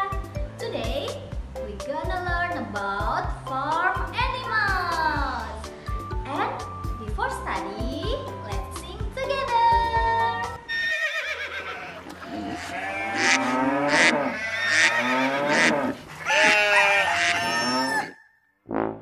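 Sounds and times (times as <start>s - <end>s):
animals bleating: 10.7s - 18.2s
cattle mooing: 11.6s - 18.2s.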